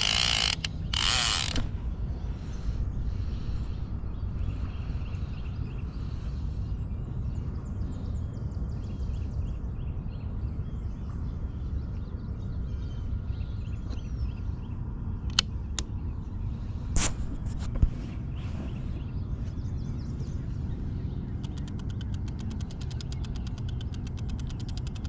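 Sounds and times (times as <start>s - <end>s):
sharp clicks: 0.0s - 5.8s, 21.4s - 25.0s
steady low rumble: 0.0s - 10.2s, 15.8s - 25.0s
birds chirping faintly: 16.0s - 25.0s.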